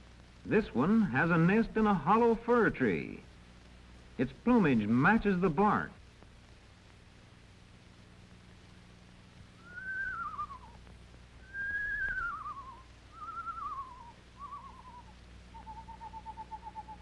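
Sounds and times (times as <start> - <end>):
owl quavering whistles: 9.6 - 10.8, 11.4 - 17.0
owl trill: 9.6 - 10.8, 11.4 - 17.0.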